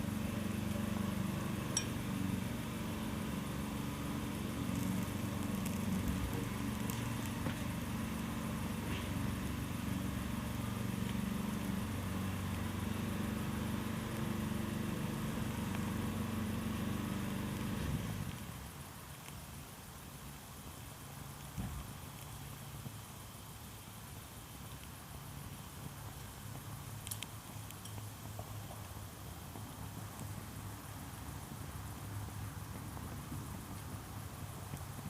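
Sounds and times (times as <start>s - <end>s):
low engine hum: 0.0s - 18.9s
faint clicks: 27.0s - 29.0s.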